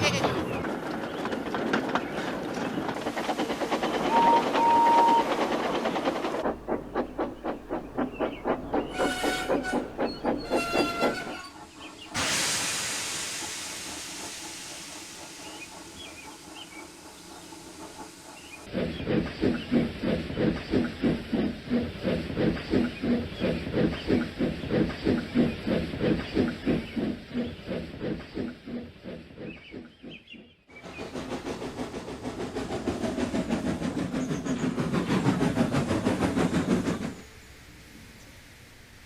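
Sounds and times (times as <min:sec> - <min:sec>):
steam locomotive chuffing: 0:00.0 - 0:39.0
faint steam hiss: 0:11.8 - 0:18.8.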